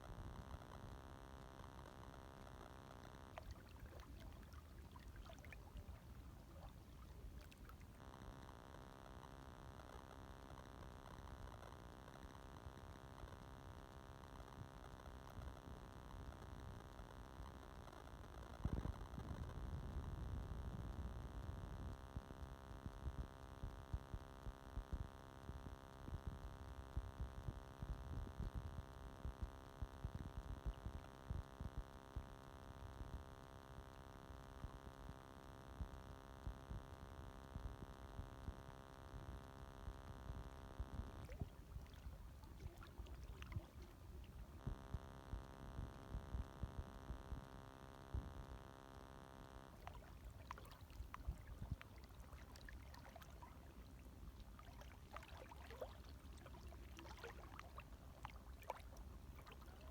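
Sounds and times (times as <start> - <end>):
steady many-toned hum: 0.0 - 59.9
small waves lapping: 3.3 - 8.1, 41.1 - 44.7, 49.7 - 59.9.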